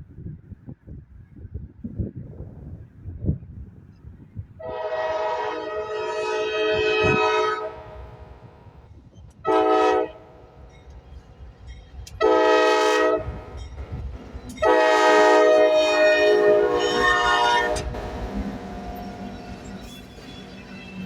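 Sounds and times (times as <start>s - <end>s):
locomotive air horn blasts: 4.6s - 8.4s, 9.5s - 10.4s, 12.2s - 13.6s, 14.6s - 18.7s
locomotive low rumble: 10.1s - 21.0s.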